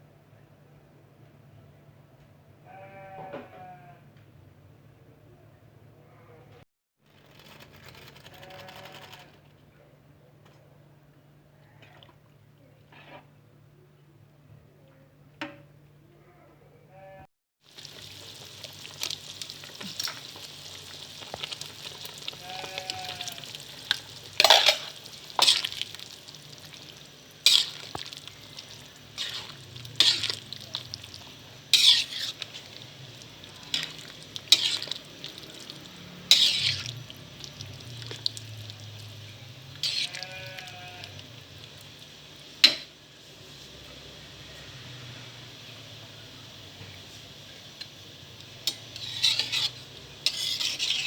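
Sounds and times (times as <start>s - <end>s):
food sizzling in a pan: 17.6s - 51.0s
spatula scraping a pan: 19.8s - 41.2s, 48.6s - 51.0s.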